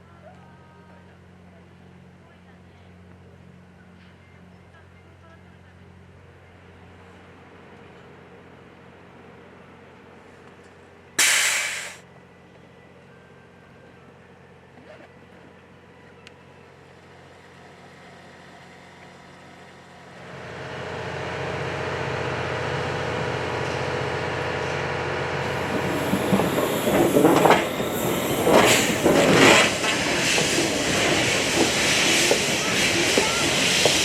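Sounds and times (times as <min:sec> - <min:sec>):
steam hissing: 0:11.2 - 0:12.0, 0:25.4 - 0:34.0
steam train rolling by: 0:11.2 - 0:12.0, 0:19.5 - 0:34.0.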